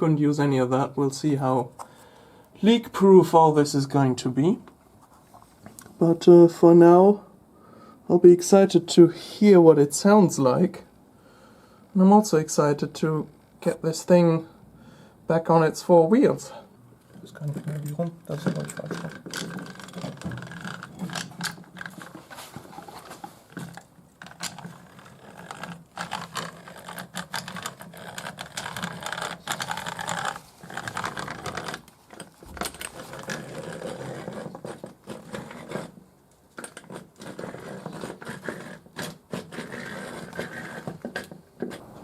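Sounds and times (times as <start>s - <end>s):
tools and metal parts clicking: 17.4s - 22.2s.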